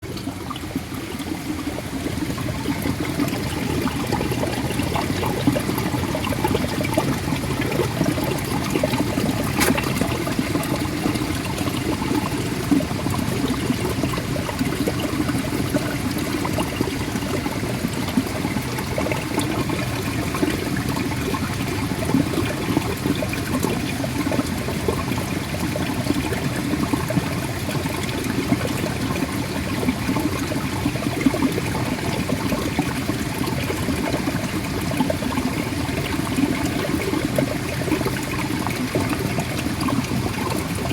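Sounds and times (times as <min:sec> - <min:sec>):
spring water bubbling: 0:00.1 - 0:24.8.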